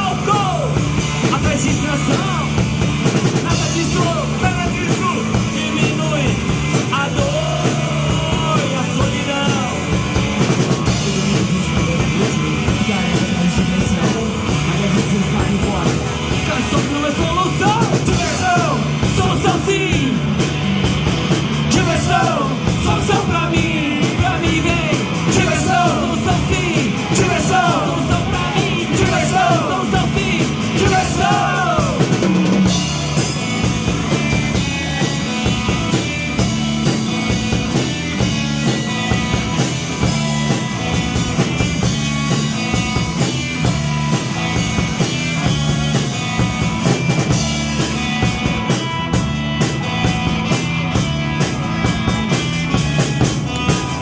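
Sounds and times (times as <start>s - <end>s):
live rock band playing: 0.0s - 54.0s
person singing: 3.5s - 10.2s, 21.7s - 32.8s.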